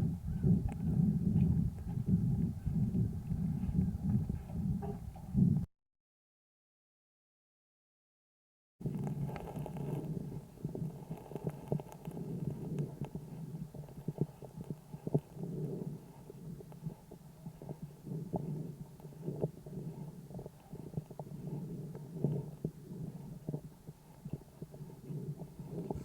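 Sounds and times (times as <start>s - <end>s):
breath sounds through stethoscope: 9.5s - 26.0s.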